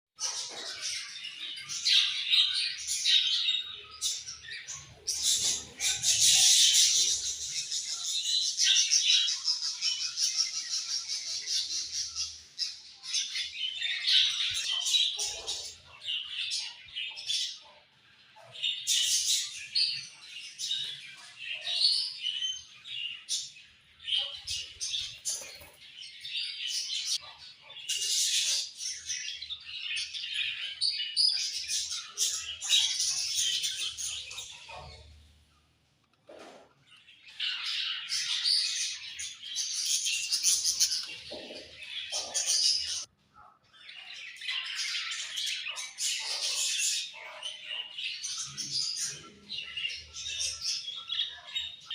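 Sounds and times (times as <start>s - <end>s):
budgerigars chirping: 0.2s - 17.9s.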